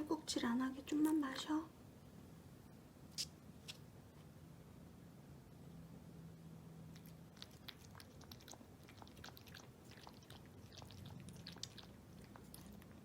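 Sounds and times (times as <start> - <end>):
puppy lapping water: 6.9 - 13.0.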